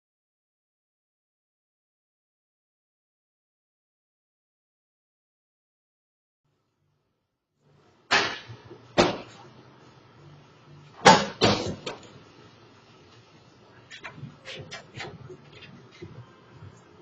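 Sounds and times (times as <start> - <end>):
sharp bangs: 8.1 - 9.4.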